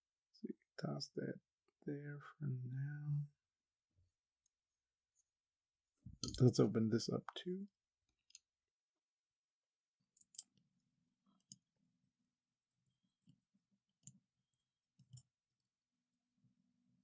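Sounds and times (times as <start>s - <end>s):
small metal parts clicking: 10.2s - 10.5s.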